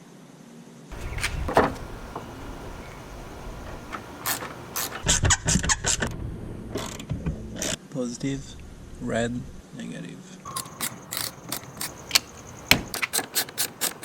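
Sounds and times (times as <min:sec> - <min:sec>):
tools and metal parts clanking: 0:00.9 - 0:05.1, 0:10.5 - 0:14.0.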